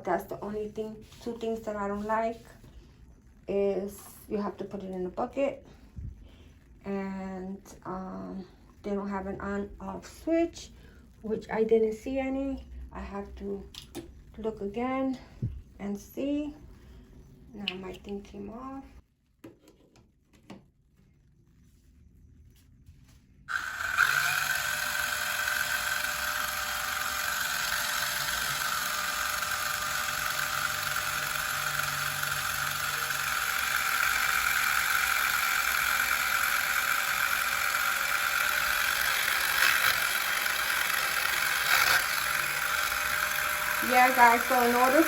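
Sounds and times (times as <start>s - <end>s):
washing machine motor whining: 23.5s - 45.0s.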